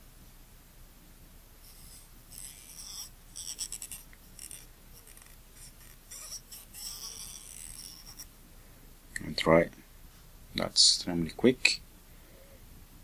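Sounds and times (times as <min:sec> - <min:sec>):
cotton swab rubbing inside lens: 0:01.6 - 0:08.3.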